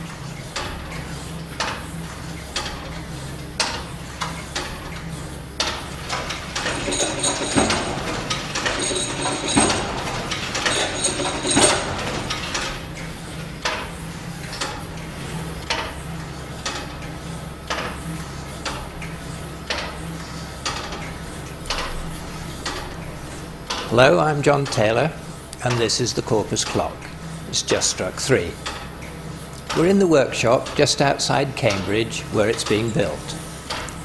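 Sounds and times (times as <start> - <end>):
clock striking: 6.0 - 12.8.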